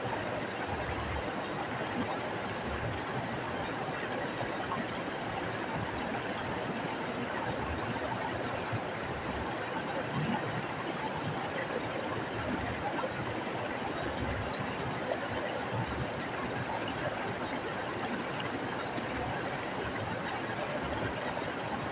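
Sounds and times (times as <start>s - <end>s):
stream flowing over rocks: 0.0s - 21.9s.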